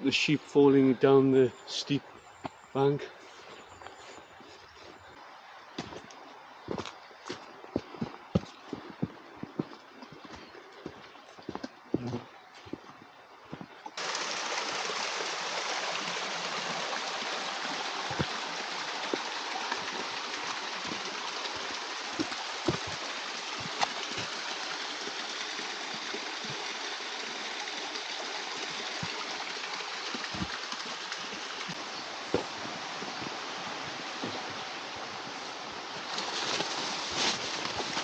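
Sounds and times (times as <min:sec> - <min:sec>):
water rushing over cascades: 0:14.0 - 0:38.0.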